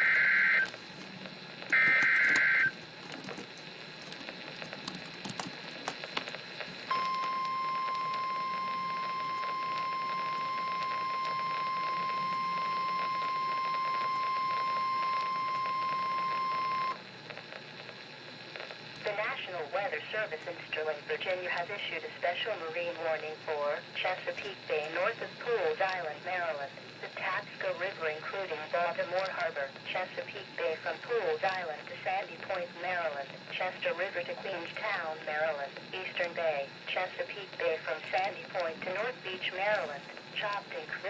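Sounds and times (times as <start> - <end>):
steady warning alarm tone: 0.0 - 0.7, 1.7 - 2.8, 6.9 - 17.0
radio hiss with crackles: 0.0 - 41.0.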